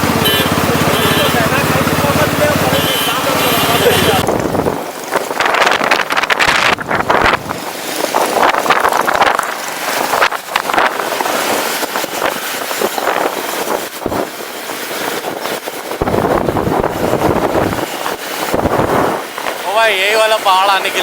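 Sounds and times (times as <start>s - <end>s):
vehicle road and engine noise: 0.0s - 21.0s
wind buffeting microphone: 3.9s - 19.7s.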